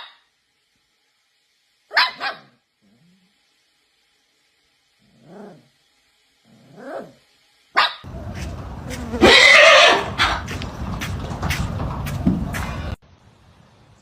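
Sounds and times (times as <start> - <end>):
puppy yapping: 1.9 - 2.6, 7.8 - 10.6.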